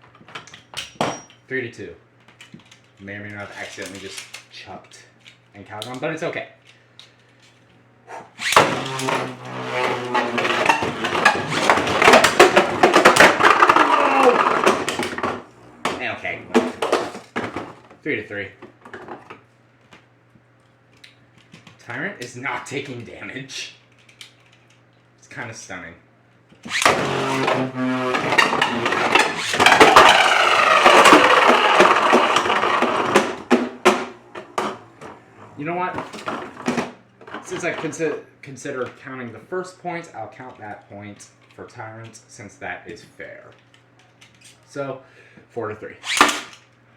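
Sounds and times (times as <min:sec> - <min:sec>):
spinning tops whining: 0:08.1 - 0:17.1, 0:26.7 - 0:36.8.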